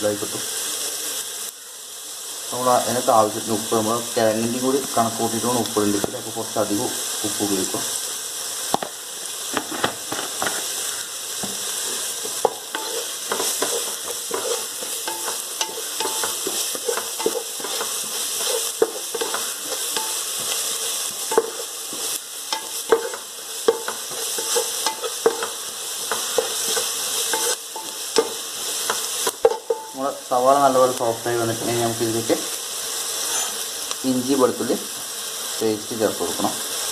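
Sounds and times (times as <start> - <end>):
onions sizzling in oil: 0.0 - 36.9.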